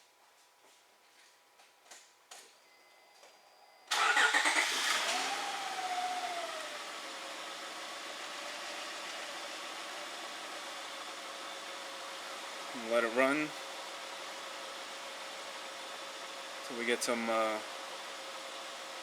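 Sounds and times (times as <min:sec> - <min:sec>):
car engine starting and idling: 0:03.9 - 0:16.6.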